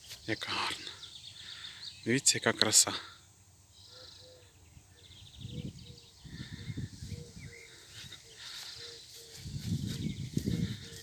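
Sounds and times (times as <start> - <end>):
footsteps on a path: 7.6 - 11.0.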